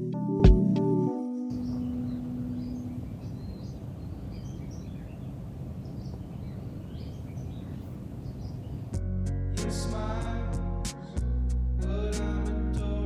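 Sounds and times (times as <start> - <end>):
small birds chirping: 1.5 - 9.0.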